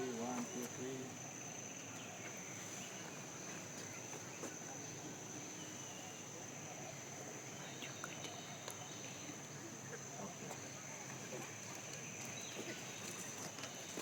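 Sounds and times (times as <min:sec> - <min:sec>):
insects droning: 0:00.0 - 0:14.0
faint ticks: 0:07.8 - 0:08.8.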